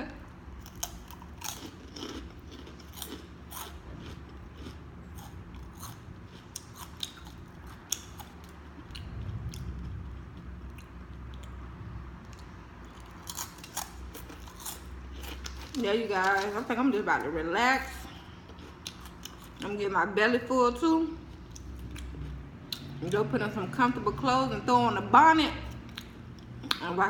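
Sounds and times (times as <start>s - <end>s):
person chewing crunchy food: 0.3s - 11.6s, 12.2s - 16.6s, 17.9s - 19.6s.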